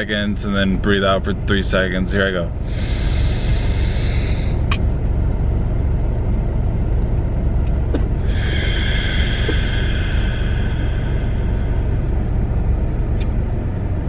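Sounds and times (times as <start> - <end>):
car cabin low rumble: 0.0 - 14.0
long breathy exhale: 2.6 - 4.8, 8.2 - 13.0.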